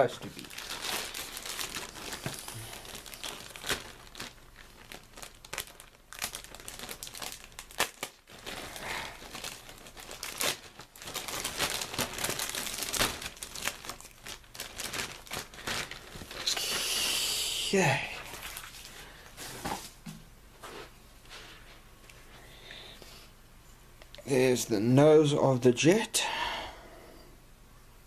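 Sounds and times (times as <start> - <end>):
plastic bag crinkling: 0.0 - 19.4.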